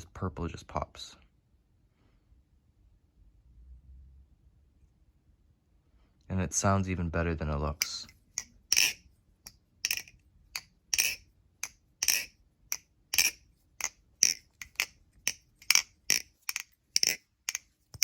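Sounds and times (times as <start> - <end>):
butterfly knife clacking: 7.8 - 18.0.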